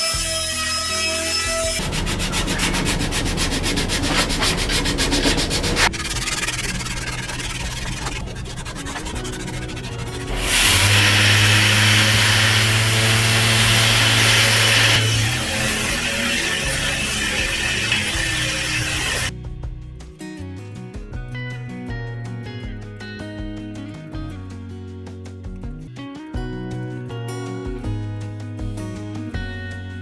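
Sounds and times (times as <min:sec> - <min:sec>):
power sander hissing: 0:01.8 - 0:19.3
sander motor hum: 0:01.8 - 0:19.3.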